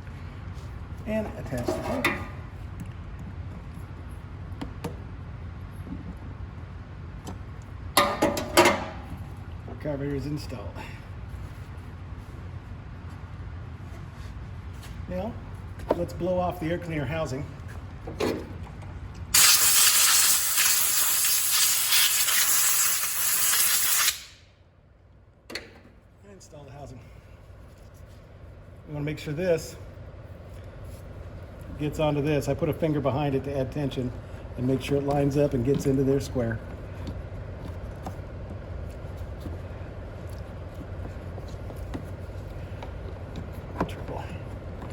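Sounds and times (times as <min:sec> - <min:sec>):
steady low hum: 0:00.0 - 0:19.4, 0:24.2 - 0:44.9
air blow gun hissing: 0:19.4 - 0:24.4.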